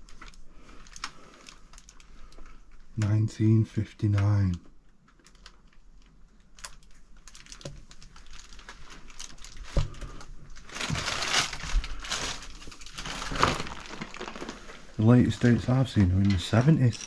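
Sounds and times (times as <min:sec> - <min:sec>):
paper crinkling and crunching: 0:06.6 - 0:17.0.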